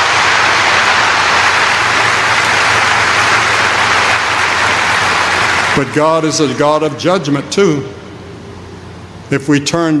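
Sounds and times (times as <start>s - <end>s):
large audience applauding: 0.0s - 6.5s.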